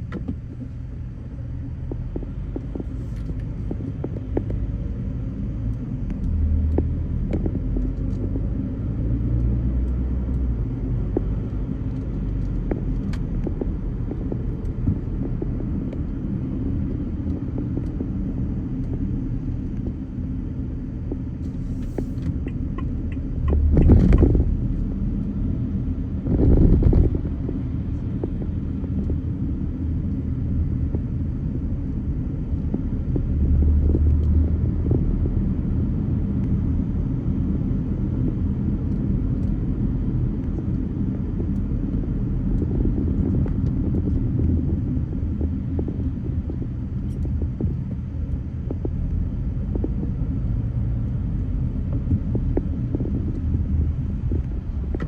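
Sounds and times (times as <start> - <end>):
car engine and road rumble: 0.0 - 55.0.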